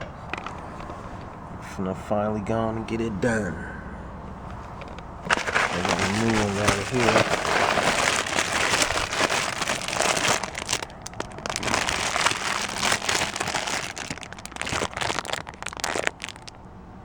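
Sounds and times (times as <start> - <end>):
plastic packaging crinkling: 0.2 - 1.1, 4.5 - 16.6.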